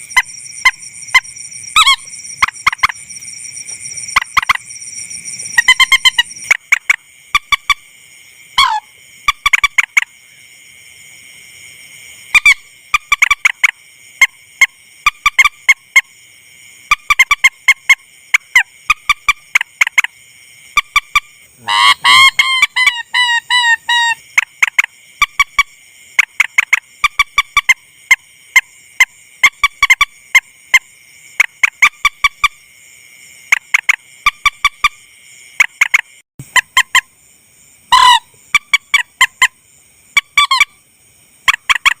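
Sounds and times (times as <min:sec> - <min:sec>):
bird lure calls: 0:01.8 - 0:03.0.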